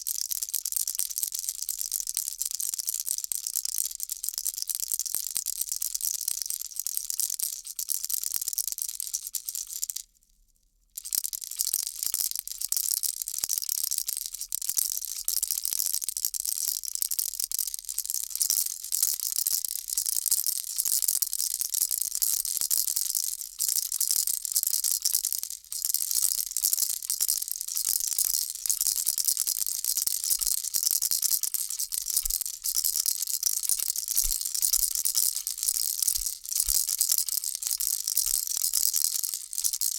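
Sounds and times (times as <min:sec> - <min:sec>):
baby rattle shaking: 0:17.8 - 0:39.9.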